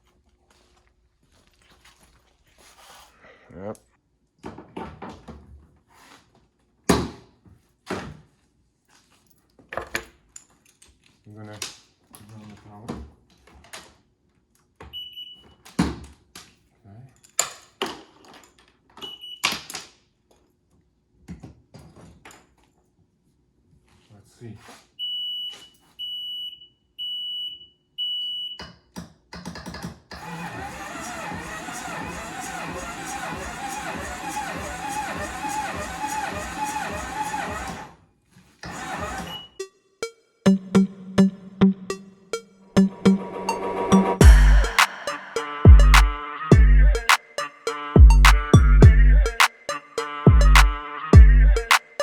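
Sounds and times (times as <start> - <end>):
high-pitched electronic beeps: 39.4 - 52.0
loud music: 40.5 - 52.0.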